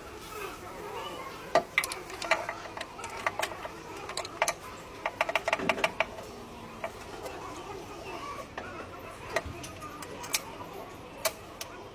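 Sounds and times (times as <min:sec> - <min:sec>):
hand tools clicking and tapping: 0:01.6 - 0:07.1.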